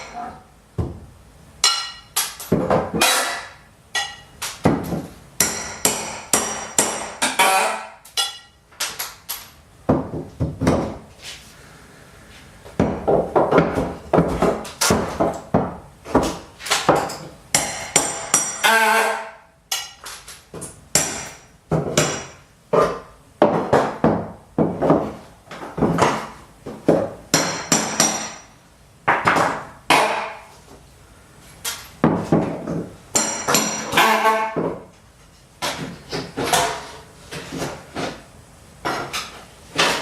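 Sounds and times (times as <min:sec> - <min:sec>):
hammer driving nails: 0:01.6 - 0:09.4, 0:16.1 - 0:20.2, 0:33.2 - 0:34.7.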